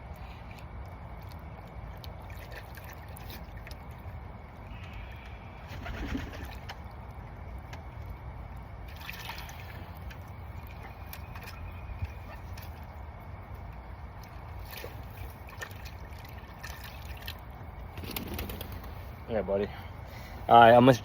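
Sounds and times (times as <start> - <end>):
steady background noise: 0.0 - 21.0
pigeons cooing: 4.9 - 6.7.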